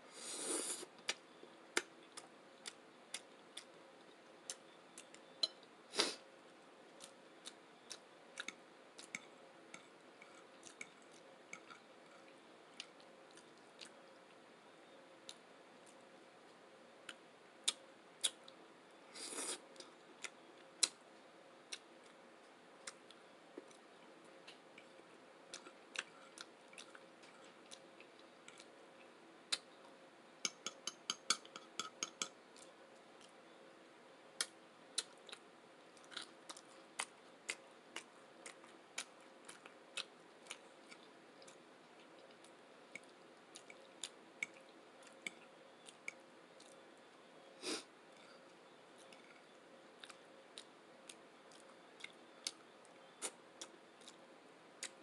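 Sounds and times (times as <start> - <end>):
chewing: 7.0 - 14.4, 24.4 - 30.7, 34.4 - 46.8, 48.1 - 54.2.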